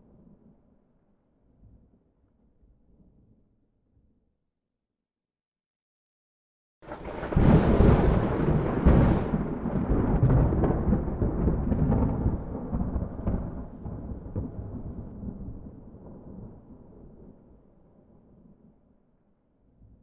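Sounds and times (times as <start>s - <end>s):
thunderclap: 6.8s - 17.1s.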